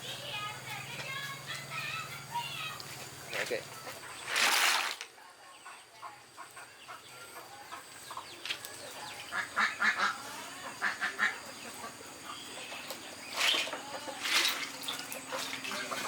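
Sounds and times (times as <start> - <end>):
waterfowl calling: 9.2 - 16.0.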